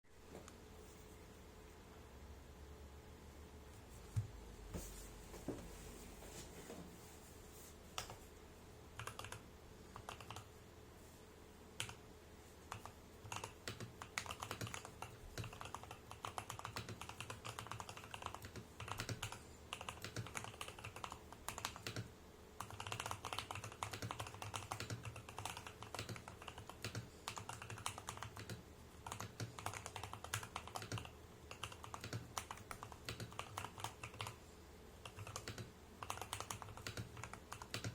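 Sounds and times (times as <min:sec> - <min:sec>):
mechanical keyboard typing: 0:09.0 - 0:09.4, 0:10.0 - 0:10.5, 0:12.7 - 0:34.4, 0:35.0 - 0:37.9.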